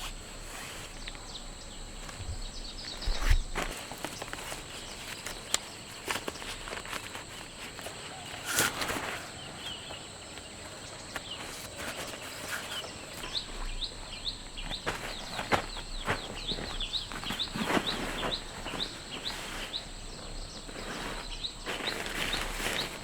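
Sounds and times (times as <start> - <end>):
bird chirping: 0.0 - 23.0
knocks and rustling: 11.1 - 23.0.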